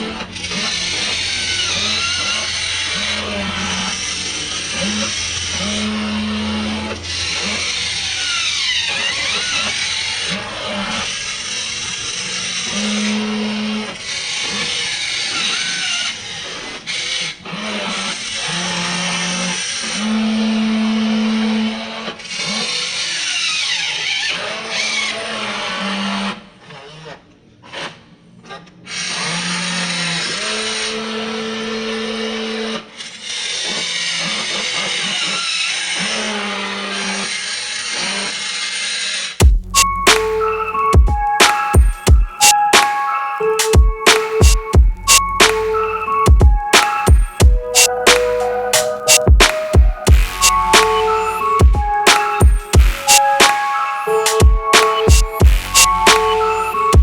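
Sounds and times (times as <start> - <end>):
thin whine shifting in pitch: 0.0 - 13.9, 39.4 - 57.0
steady mechanical noise: 0.0 - 21.0.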